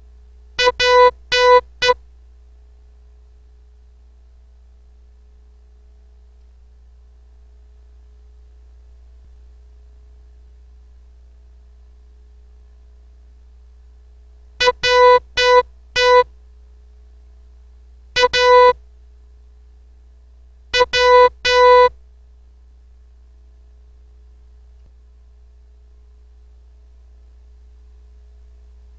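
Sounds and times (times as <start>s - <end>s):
morse code beeps: 0.6s - 2.0s, 14.6s - 16.2s, 18.2s - 18.8s, 20.8s - 21.9s.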